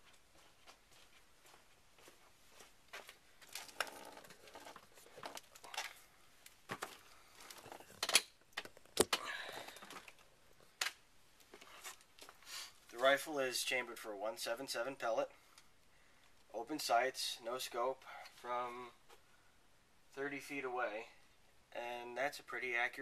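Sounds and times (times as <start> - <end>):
handling rustling and clicks: 3.0 - 12.3.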